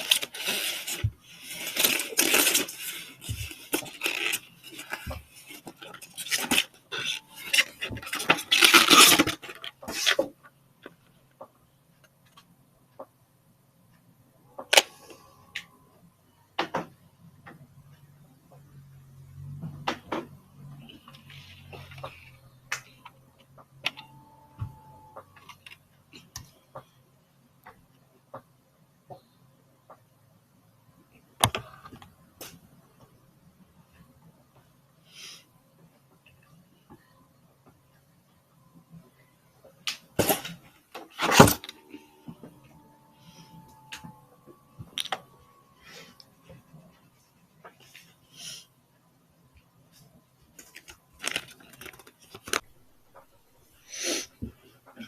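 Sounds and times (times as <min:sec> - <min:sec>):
brief steady tone: 0:23.9 - 0:25.4, 0:42.0 - 0:46.3.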